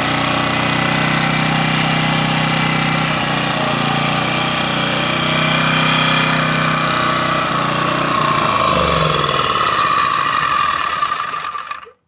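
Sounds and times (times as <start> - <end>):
generator engine running: 0.0 - 12.0.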